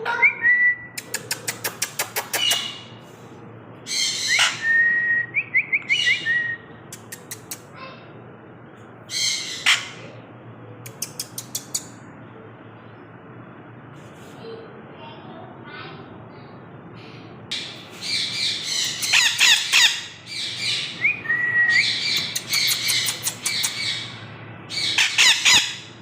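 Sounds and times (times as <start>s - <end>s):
parrot rapid sharp clicks: 1.0s - 2.7s, 7.0s - 7.6s, 10.9s - 11.9s, 22.1s - 23.8s
parrot squawking: 1.1s - 3.0s, 3.9s - 4.8s, 9.1s - 10.0s, 17.6s - 25.9s
parrot whistle and chirps: 4.0s - 6.7s, 18.2s - 23.9s.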